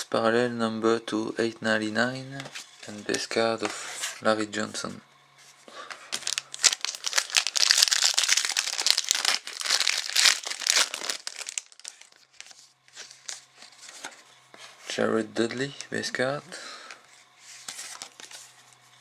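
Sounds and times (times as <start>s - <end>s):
foil wrapper tearing and crinkling: 6.1s - 13.5s.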